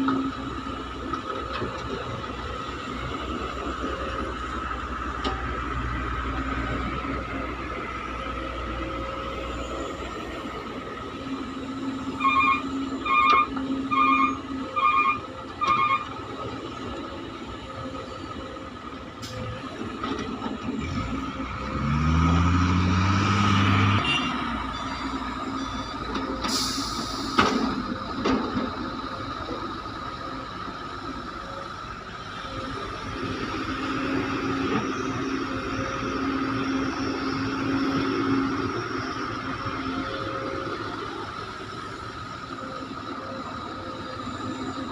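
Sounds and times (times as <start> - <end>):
heavy diesel machinery running: 0.0 - 44.9
short beeps: 12.2 - 16.1
engine revving: 20.7 - 24.6.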